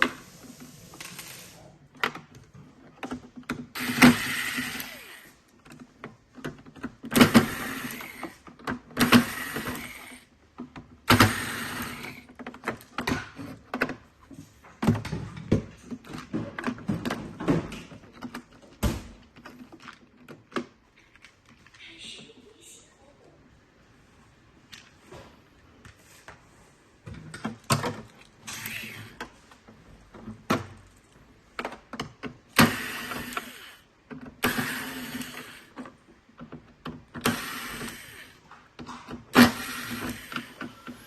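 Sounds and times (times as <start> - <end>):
plastic parts scraping: 0.0 - 22.6
plastic clicks and knocks: 1.9 - 4.2, 5.4 - 21.8, 27.0 - 33.4, 35.3 - 37.4, 38.5 - 41.0.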